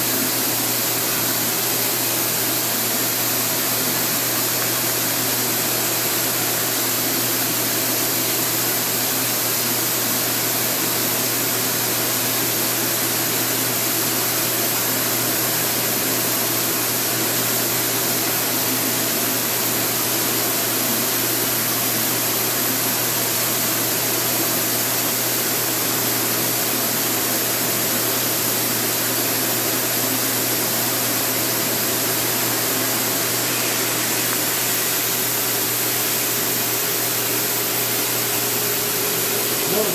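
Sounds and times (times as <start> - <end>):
blower whooshing whir: 31.2 - 39.9.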